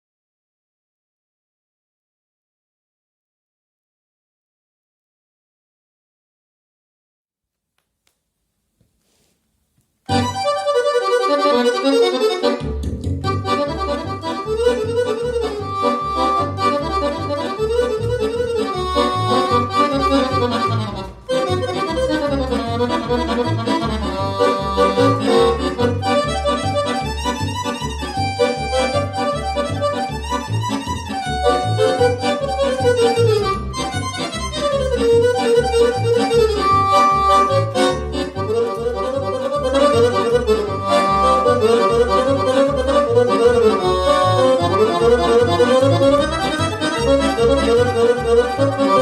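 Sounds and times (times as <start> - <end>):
accordion melody: 10.0 - 49.0
accordion bass accompaniment: 10.1 - 49.0.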